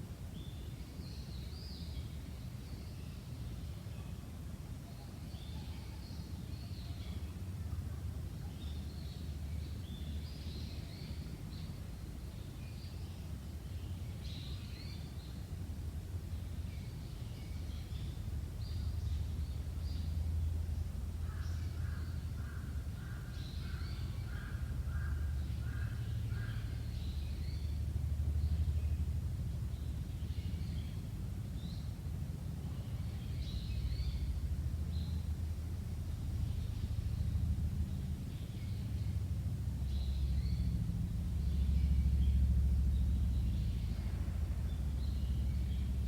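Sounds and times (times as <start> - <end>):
low rumble: 24.1 - 46.0
wild birds chirping: 32.6 - 46.0.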